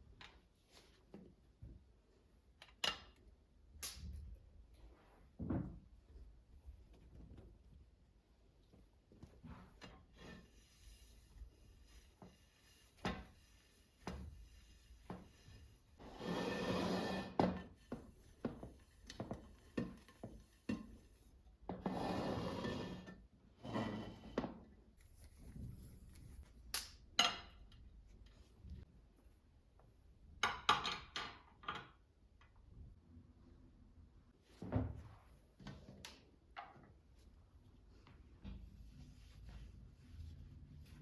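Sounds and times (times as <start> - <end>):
rubbing or scraping: 9.5 - 24.3.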